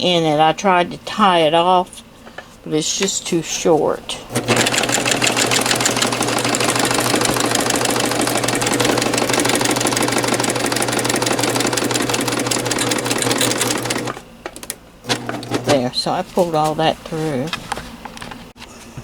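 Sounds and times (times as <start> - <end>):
serger sewing machine running: 4.2 - 14.2, 15.0 - 16.2.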